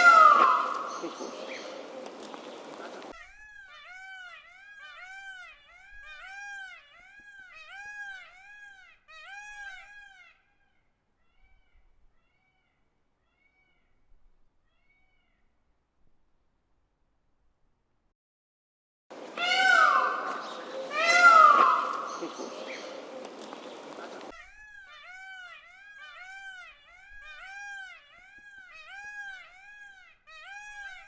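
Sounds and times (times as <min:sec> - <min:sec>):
peacock calling: 0:00.0 - 0:05.4, 0:19.1 - 0:31.0.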